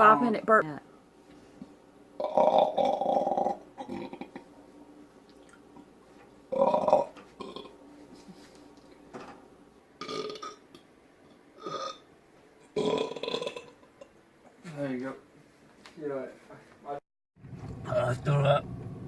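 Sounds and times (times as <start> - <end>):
person belching loudly: 2.2 - 4.5, 6.5 - 7.8, 10.0 - 10.6, 11.6 - 12.0, 12.8 - 13.9.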